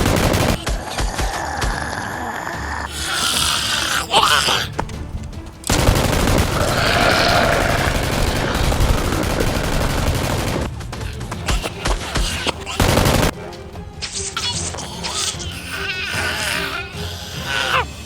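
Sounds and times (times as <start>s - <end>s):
rapid gunfire: 0.0s - 1.1s, 5.7s - 13.4s
background music: 0.0s - 18.0s.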